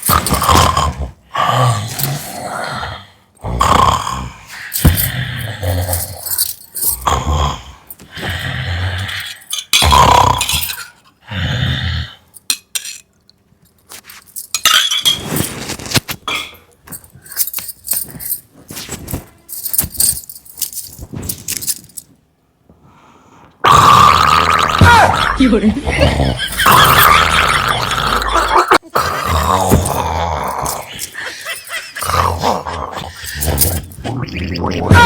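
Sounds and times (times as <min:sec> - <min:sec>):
person snoring: 0:00.2 - 0:12.3, 0:23.6 - 0:35.0.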